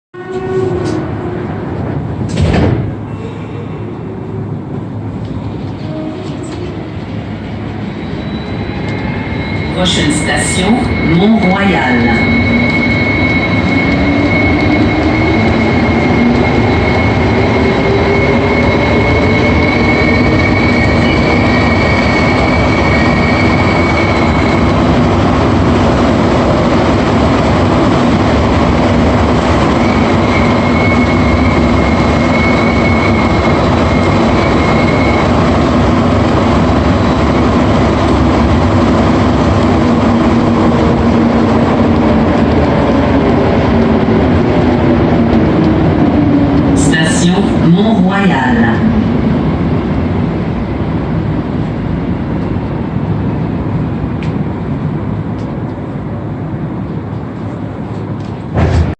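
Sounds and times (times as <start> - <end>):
metro train rumble and motor hum: 0.2 - 58.9
high-pitched whistle: 7.9 - 24.6.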